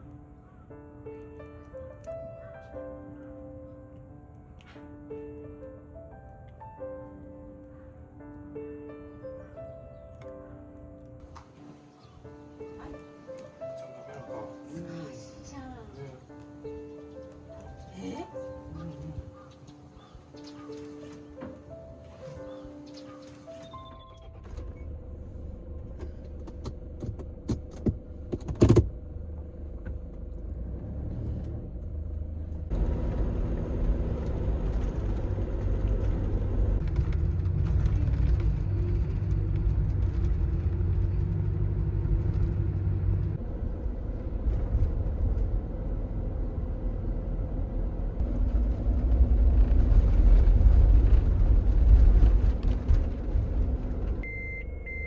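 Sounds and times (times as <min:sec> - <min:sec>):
van engine and road rumble: 0:11.2 - 0:55.0.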